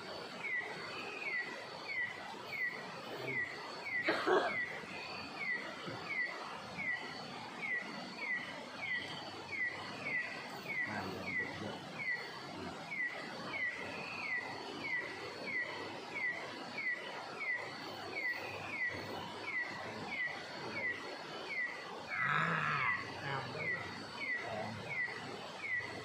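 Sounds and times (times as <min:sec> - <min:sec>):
faint high-pitched whine: 0:00.0 - 0:26.0
animal chirping: 0:22.1 - 0:26.0.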